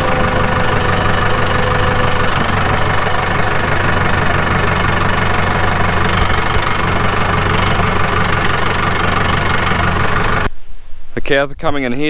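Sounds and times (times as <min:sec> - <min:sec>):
farm vehicle engine running: 0:00.0 - 0:10.5.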